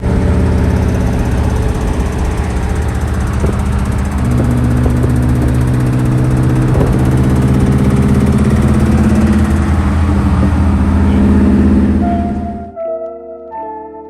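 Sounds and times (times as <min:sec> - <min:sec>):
car engine running: 0:00.0 - 0:12.8
chiming music sting: 0:11.2 - 0:14.0.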